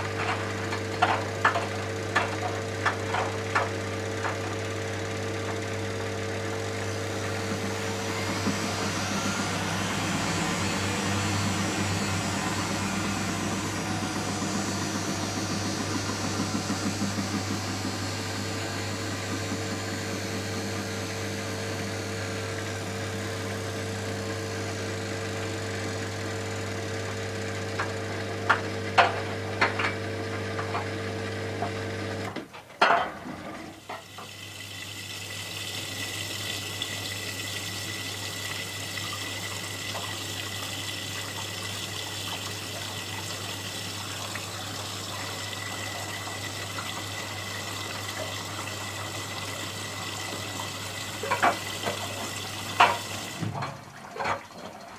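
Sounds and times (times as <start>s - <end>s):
water running into drum: 0.0s - 30.9s, 32.7s - 54.9s
washing machine drain pump hum: 0.0s - 54.9s
washing machine clunk: 50.3s - 54.8s.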